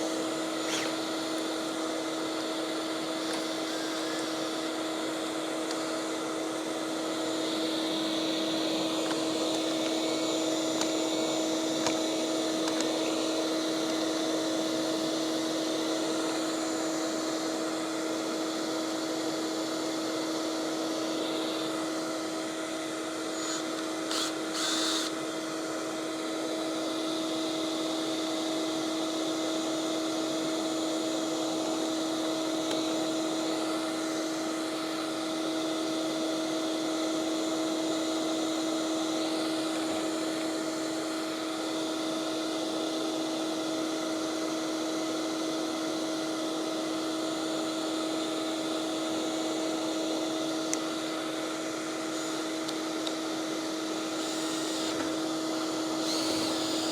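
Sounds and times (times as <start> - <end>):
shop vacuum humming: 0.0 - 56.9.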